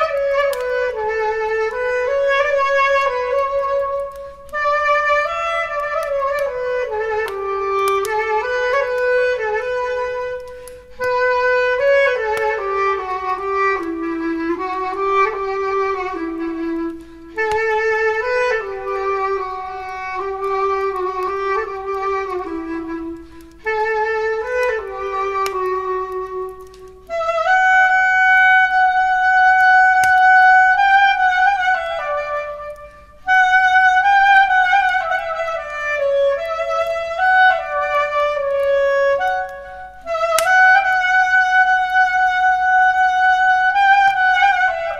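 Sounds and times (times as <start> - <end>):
solo clarinet slow melody: 0.0 - 44.9
player breathing: 10.5 - 10.9.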